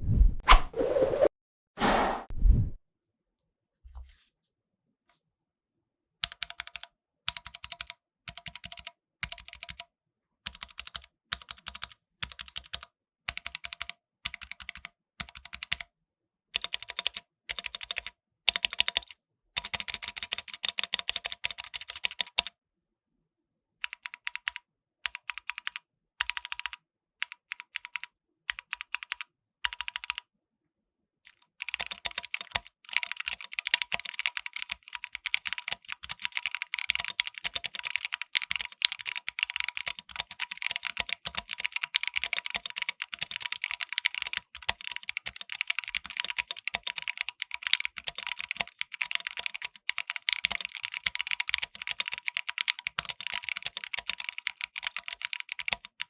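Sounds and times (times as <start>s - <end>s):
mechanical keyboard typing: 6.2s - 9.8s, 10.5s - 15.8s, 16.6s - 22.5s, 23.8s - 30.2s, 31.6s - 56.0s.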